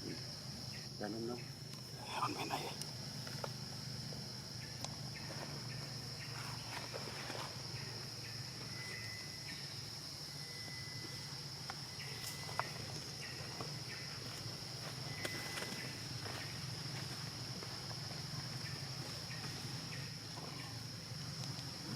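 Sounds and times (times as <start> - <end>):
high-pitched insect drone: 0.0 - 21.9.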